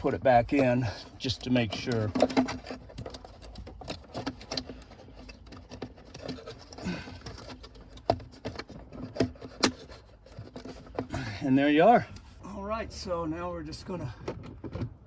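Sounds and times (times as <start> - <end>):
plastic parts clicking: 1.4 - 11.1.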